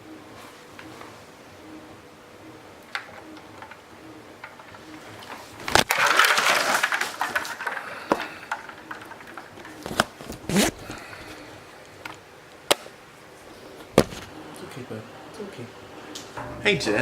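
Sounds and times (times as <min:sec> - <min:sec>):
ice clinking: 0:04.4 - 0:11.6.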